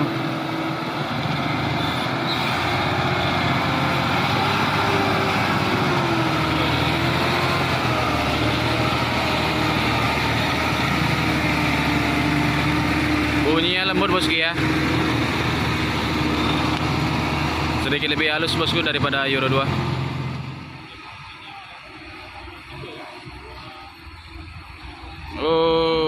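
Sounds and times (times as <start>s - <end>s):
diesel truck engine running: 0.0s - 26.0s.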